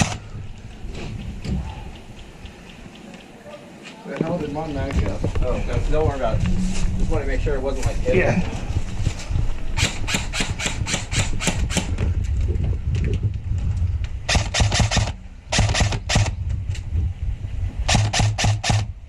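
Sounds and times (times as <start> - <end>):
steady low rumble: 0.0 - 3.4, 4.2 - 19.0
airsoft guns firing: 14.3 - 16.3, 17.9 - 18.9.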